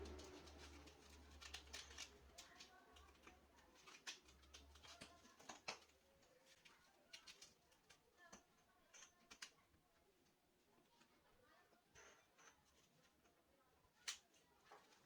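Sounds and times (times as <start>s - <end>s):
faint clicks and light taps: 0.3s - 9.9s.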